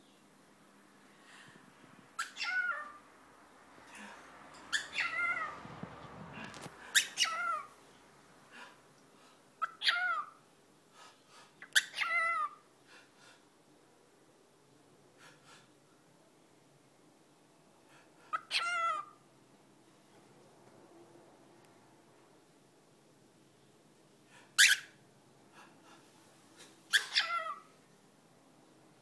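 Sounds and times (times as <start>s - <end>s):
cockatiel imitating a sneeze: 26.9s - 27.6s.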